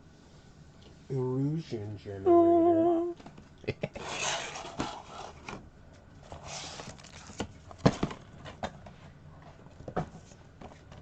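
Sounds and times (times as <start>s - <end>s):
plastic packaging rustling: 6.2s - 8.5s.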